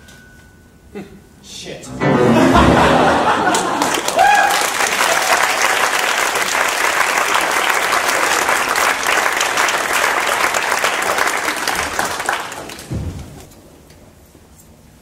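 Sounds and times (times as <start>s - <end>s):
audience applauding: 2.5s - 12.9s.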